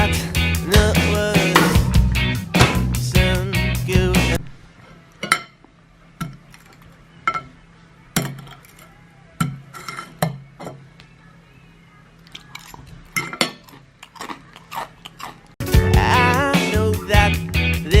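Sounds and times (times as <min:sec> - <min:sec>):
cutlery clinking on a plate: 0:05.2 - 0:05.6, 0:06.2 - 0:07.6, 0:08.2 - 0:10.8, 0:13.1 - 0:13.8.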